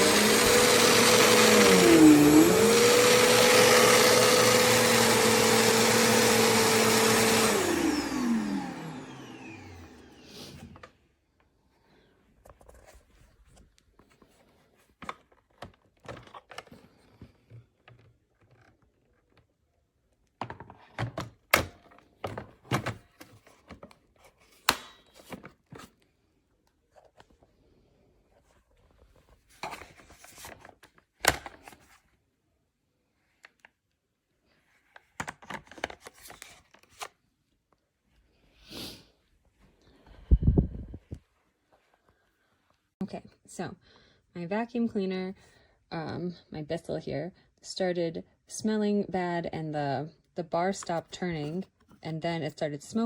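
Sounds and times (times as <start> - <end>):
vacuum cleaner motor running: 0.0 - 10.8.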